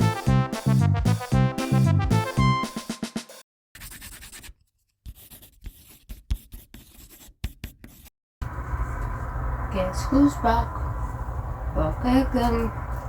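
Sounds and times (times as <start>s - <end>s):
background music: 0.0s - 3.4s.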